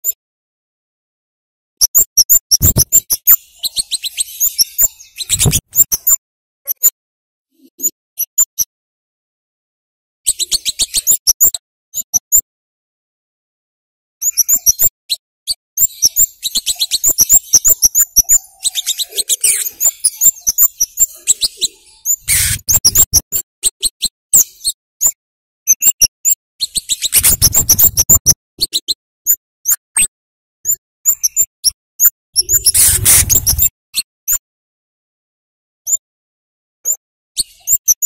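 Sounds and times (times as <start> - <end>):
bird chip calls: 1.8 - 6.9, 10.3 - 12.4, 14.2 - 14.9, 15.5 - 25.2, 26.6 - 29.8, 30.7 - 33.7.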